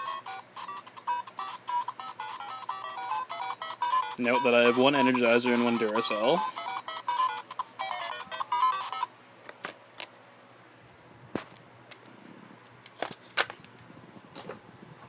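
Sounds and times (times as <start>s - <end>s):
alarm clock electronic tune: 0.0s - 9.1s.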